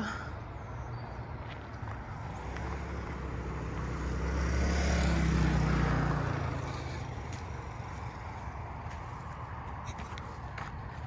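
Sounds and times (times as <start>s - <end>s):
vehicle driving past: 2.0s - 9.9s.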